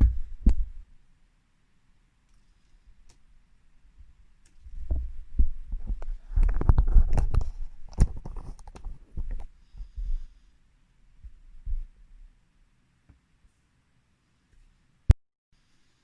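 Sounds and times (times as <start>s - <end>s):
handling thumps and clicks: 4.5s - 9.5s.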